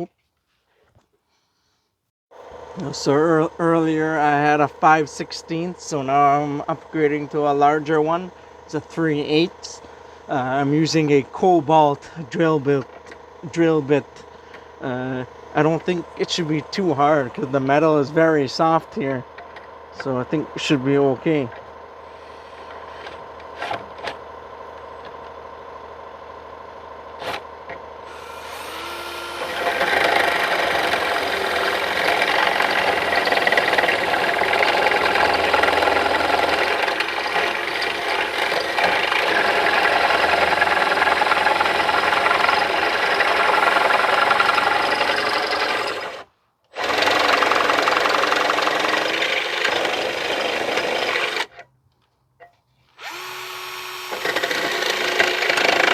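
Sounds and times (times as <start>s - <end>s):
power drill boring into metal: 28.1s - 51.5s, 53.0s - 55.9s.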